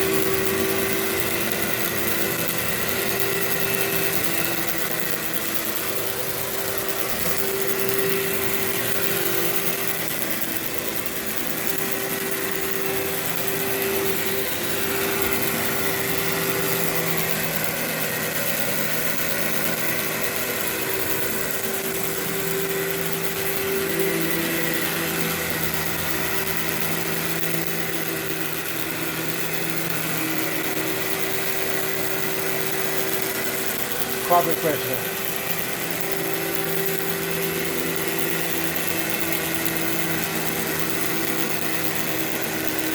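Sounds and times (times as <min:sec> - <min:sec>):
vacuum cleaner running: 0:00.0 - 0:42.9.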